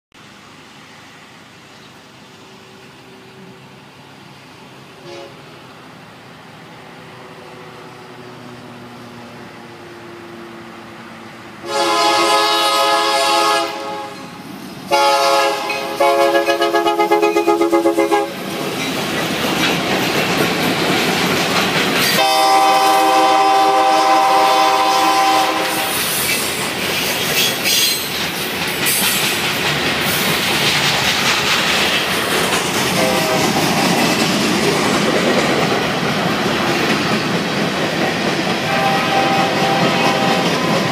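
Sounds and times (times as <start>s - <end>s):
locomotive air horn blasts: 5.0s - 5.5s, 11.6s - 14.3s, 14.9s - 18.4s, 22.2s - 26.0s, 33.0s - 33.6s, 38.6s - 40.7s
train wheels clacking over rail joints: 15.2s - 40.9s.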